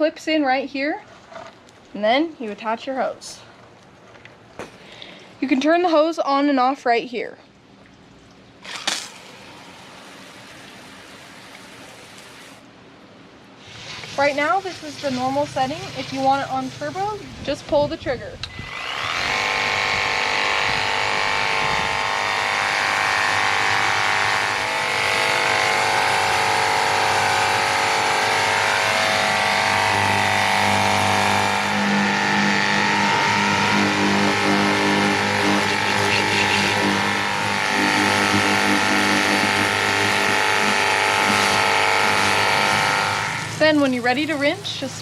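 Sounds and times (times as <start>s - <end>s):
water spray hissing: 13.6s - 17.4s, 29.5s - 45.0s
pressure washer motor whine: 18.4s - 45.0s.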